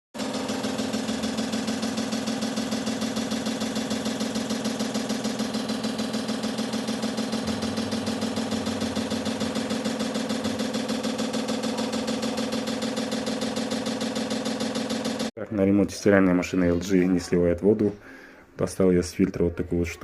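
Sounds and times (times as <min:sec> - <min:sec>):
washing machine humming: 0:00.2 - 0:15.4.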